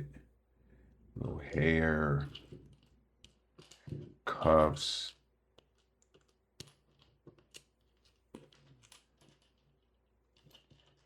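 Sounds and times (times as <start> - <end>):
plastic pieces clicking and tapping: 2.2 - 4.2, 5.5 - 11.0.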